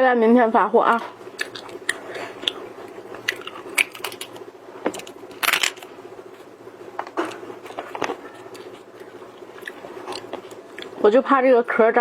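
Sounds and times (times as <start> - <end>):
shellfish shells crunching: 1.4 - 5.9.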